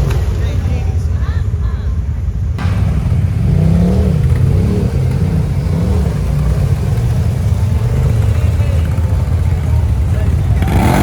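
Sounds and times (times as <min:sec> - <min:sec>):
atv engine revving: 0:02.6 - 0:11.0.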